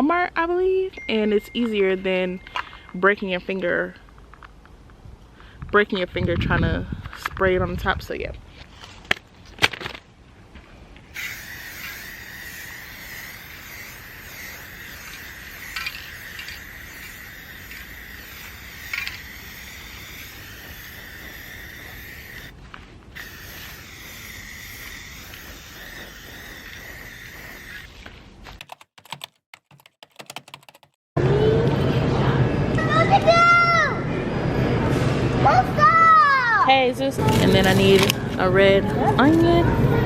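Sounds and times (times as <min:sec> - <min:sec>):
spray paint can hissing: 0:11.1 - 0:28.0.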